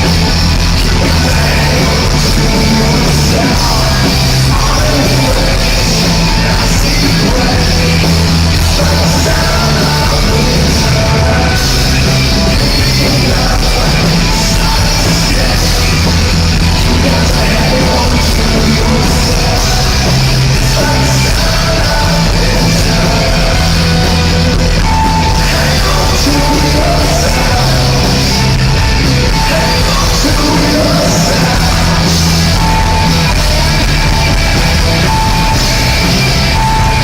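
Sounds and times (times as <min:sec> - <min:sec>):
live rock band playing: 0:00.0 - 0:37.0.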